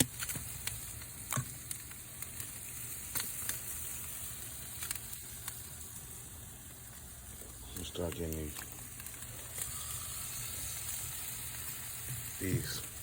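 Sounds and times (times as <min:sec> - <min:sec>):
meat sizzling on a grill: 0:00.0 - 0:13.0
sharp crackles: 0:00.0 - 0:13.0.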